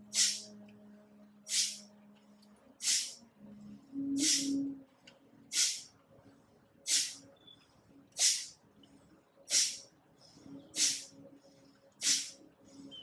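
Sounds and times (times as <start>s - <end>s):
forceful nasal exhalations: 2.8s - 3.2s, 4.2s - 4.5s, 8.2s - 8.5s, 9.5s - 9.8s, 10.8s - 11.1s, 12.0s - 12.4s.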